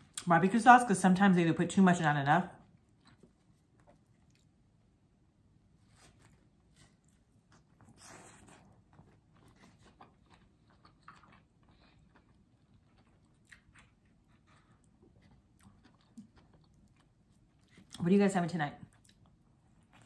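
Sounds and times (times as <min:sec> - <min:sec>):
chewing and biting pizza: 0:02.6 - 0:04.6, 0:05.8 - 0:18.0, 0:18.8 - 0:20.0.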